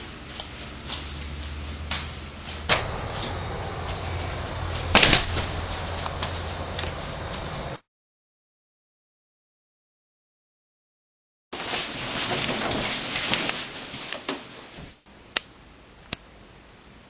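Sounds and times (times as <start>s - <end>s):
steady low hum: 1.5s - 7.8s
loud thump: 2.7s - 6.9s.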